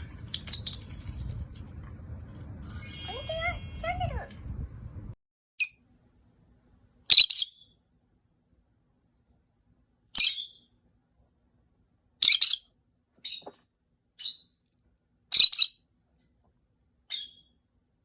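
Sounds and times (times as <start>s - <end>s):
lovebirds shrill contact calls: 7.1s - 7.6s, 15.4s - 15.7s.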